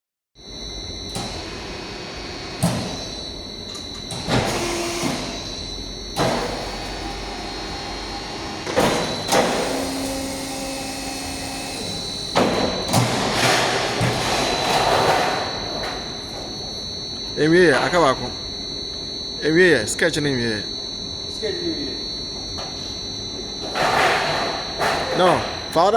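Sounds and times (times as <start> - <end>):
machine high whine: 0.4 - 25.9
machine clunks: 3.7 - 16.2, 23.6 - 25.9.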